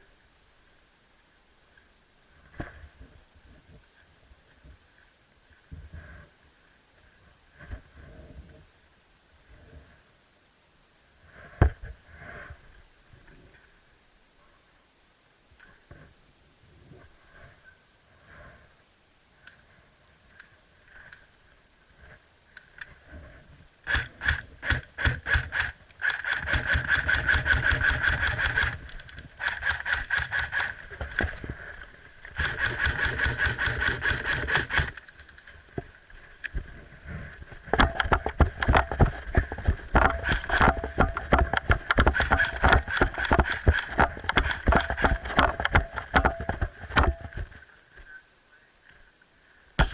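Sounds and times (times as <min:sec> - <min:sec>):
faint ticks: 0:19.4 - 0:21.4, 0:22.0 - 0:23.0
airsoft gun firing rattle: 0:23.9 - 0:31.4, 0:32.3 - 0:35.4, 0:37.7 - 0:47.5.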